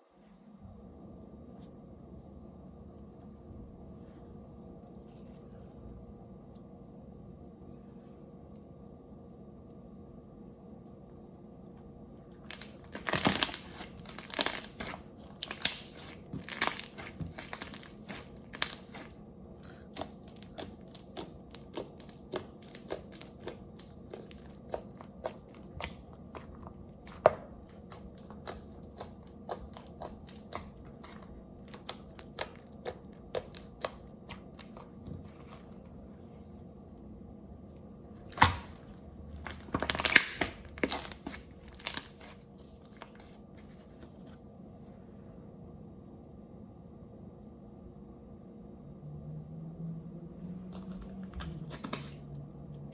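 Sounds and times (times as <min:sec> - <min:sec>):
slime sticky clicks: 0:19.7 - 0:26.5.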